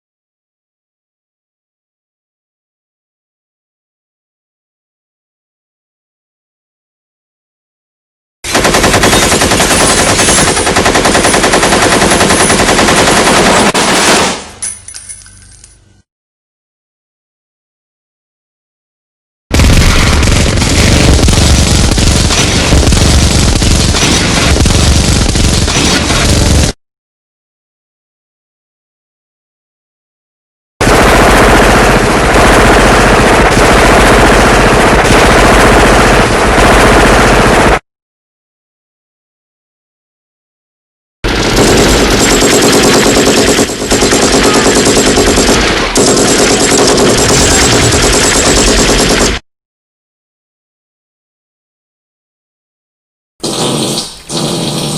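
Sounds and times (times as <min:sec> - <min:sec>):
machine gun automatic fire: 0:08.5 - 0:14.6, 0:19.5 - 0:26.8, 0:30.8 - 0:37.8, 0:41.2 - 0:49.4, 0:53.4 - 0:54.9.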